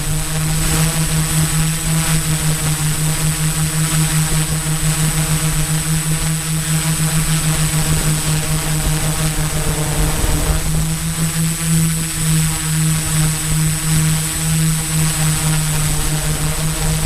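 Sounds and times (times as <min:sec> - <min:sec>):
drone motors buzzing: 0:00.0 - 0:17.0
wind rumble on microphone: 0:00.0 - 0:17.0.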